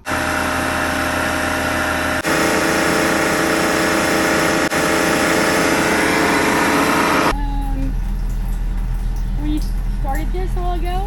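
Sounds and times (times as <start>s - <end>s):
rushing water noise: 0.0s - 7.3s
pump motor humming: 0.0s - 11.0s.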